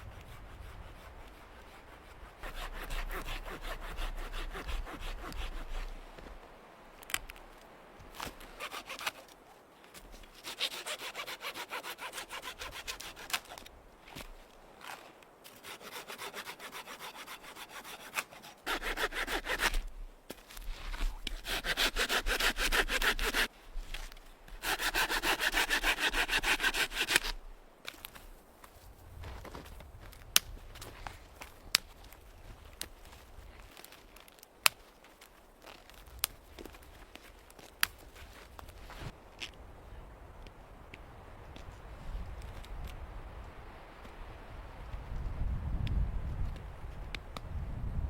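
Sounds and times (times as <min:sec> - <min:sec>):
hand saw cutting wood: 0:00.0 - 0:06.0, 0:08.2 - 0:09.4, 0:10.0 - 0:20.1, 0:20.8 - 0:28.2.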